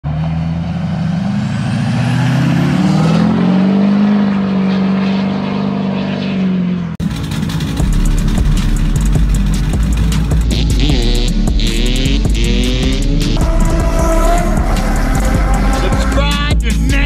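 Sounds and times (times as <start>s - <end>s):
diesel truck engine revving: 0.0s - 17.0s
music with heavy beat: 7.1s - 17.0s.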